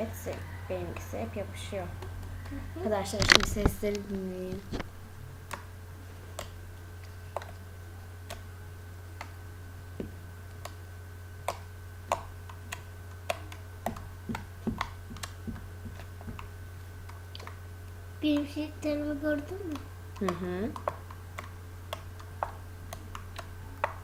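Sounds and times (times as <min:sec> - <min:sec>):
low hum: 0:00.0 - 0:24.0
slime clicking and popping: 0:11.4 - 0:17.6, 0:19.5 - 0:24.0.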